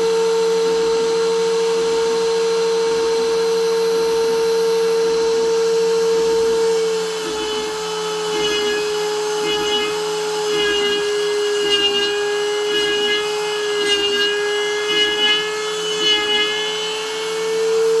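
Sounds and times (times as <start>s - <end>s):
milling spindle whine: 6.4s - 18.0s
cutter cutting noise: 6.6s - 18.0s.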